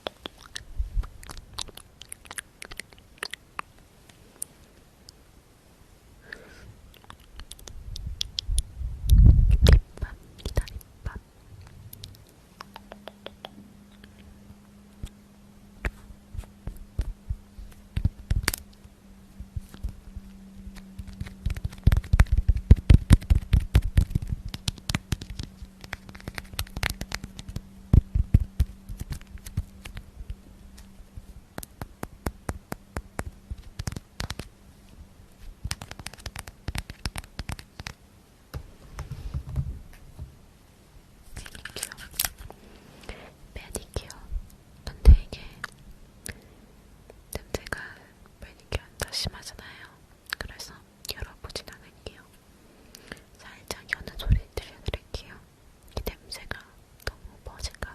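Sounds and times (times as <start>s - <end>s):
fingertips tapping and scratching: 0.0s - 3.8s, 7.0s - 8.6s, 12.0s - 14.3s, 15.8s - 34.5s, 35.4s - 39.7s
faint low hum: 0.0s - 57.9s.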